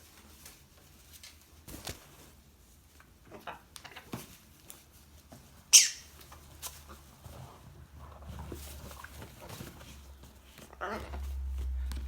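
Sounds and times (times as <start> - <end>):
parrot squawk: 5.7 - 6.1
scratching and rustling: 6.2 - 12.0.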